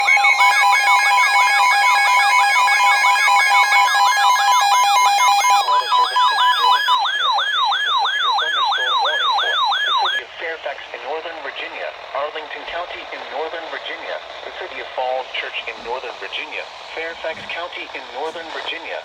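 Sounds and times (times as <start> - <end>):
two-tone alert signal: 0.0 - 10.2
warbling electronic siren: 0.0 - 10.3.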